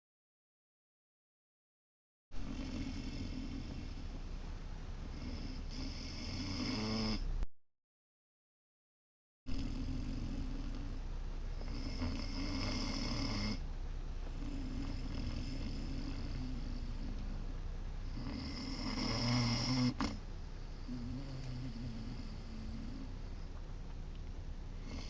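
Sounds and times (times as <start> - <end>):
puppy snoring: 2.4 - 4.3, 5.0 - 7.4, 9.5 - 13.6, 14.3 - 23.6, 24.8 - 25.0
faint steady hum: 2.4 - 7.5, 9.5 - 25.0
click: 21.4 - 21.6.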